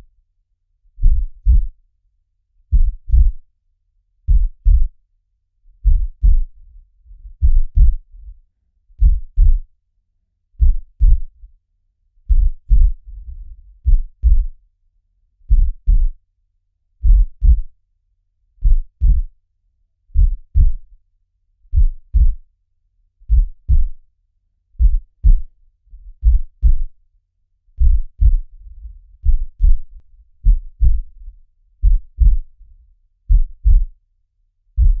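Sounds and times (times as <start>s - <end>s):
heartbeat thumps: 1.0s - 1.7s, 2.7s - 3.4s, 4.3s - 5.0s, 5.8s - 6.5s, 7.2s - 8.1s, 9.0s - 9.7s, 10.6s - 11.3s, 12.3s - 14.6s, 15.5s - 16.2s, 17.0s - 17.7s, 18.6s - 19.3s, 20.2s - 20.9s, 21.7s - 22.4s, 23.3s - 24.0s, 24.8s - 25.6s, 26.2s - 27.0s, 27.8s - 32.6s, 33.3s - 34.0s, 34.8s - 35.0s.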